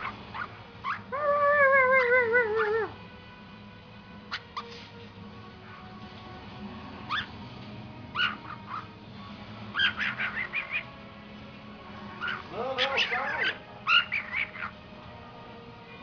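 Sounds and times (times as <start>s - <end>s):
cockatiel bark-like calls: 0.0s - 3.0s, 4.3s - 4.8s, 7.0s - 7.4s, 8.1s - 9.0s, 9.7s - 11.0s, 12.2s - 14.8s
faint music: 0.0s - 16.0s.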